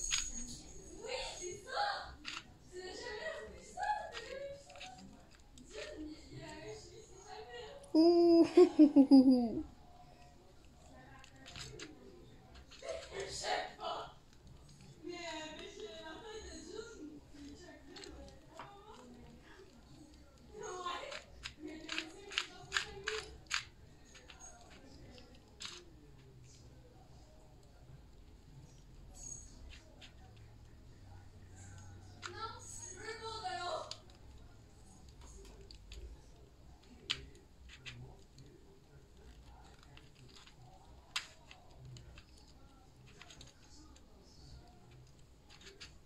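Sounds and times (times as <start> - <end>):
puzzle cube clicking as twisted: 21.1 - 24.9, 25.6 - 25.8.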